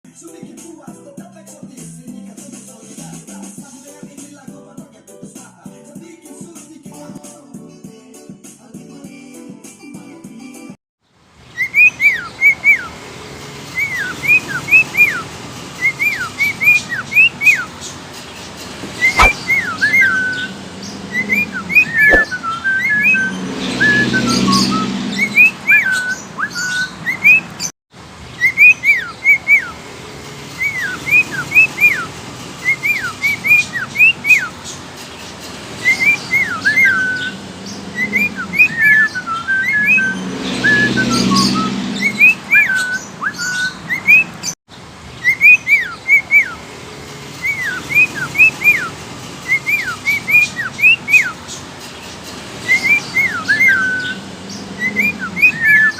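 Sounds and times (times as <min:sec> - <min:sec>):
budgerigar whistling chirps: 0:11.6 - 0:12.9, 0:13.8 - 0:17.7, 0:18.9 - 0:27.7, 0:28.4 - 0:29.8, 0:30.6 - 0:34.6, 0:35.8 - 0:44.5, 0:45.2 - 0:46.6, 0:47.4 - 0:51.4, 0:52.6 - 0:55.9.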